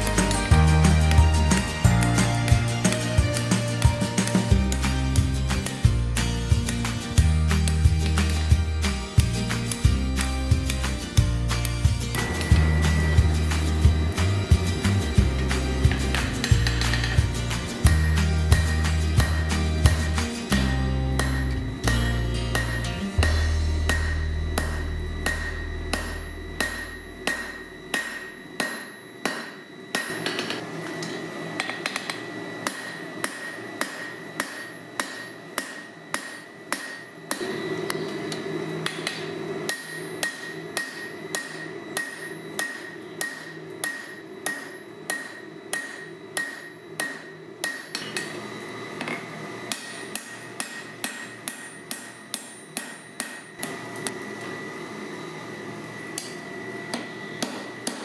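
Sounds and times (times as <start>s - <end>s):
hammer striking steel on anvil: 10.7s - 48.4s, 49.0s - 54.2s, 56.1s - 58.0s
anvil ringing: 12.1s - 30.5s, 31.9s - 37.6s, 38.9s - 48.3s, 49.7s - 53.7s.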